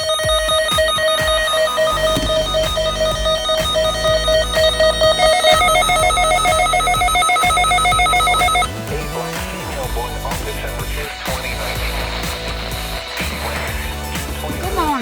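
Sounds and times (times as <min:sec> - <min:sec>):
pulsing trilling electronic tone: 0:00.0 - 0:09.0
low electronic beat: 0:00.0 - 0:15.0.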